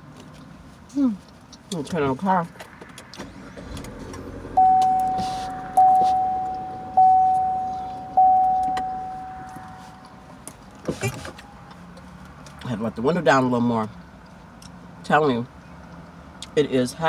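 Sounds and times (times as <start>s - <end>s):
car warning chime dings: 4.6s - 10.2s.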